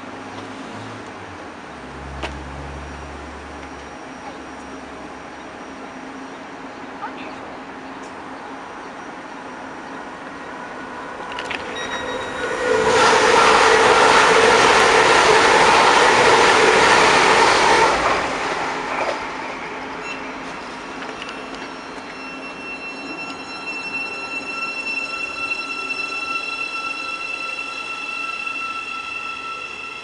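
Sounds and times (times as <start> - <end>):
electric train rushing rumble: 0.0 - 30.0
high steady squealing tones: 8.9 - 30.0.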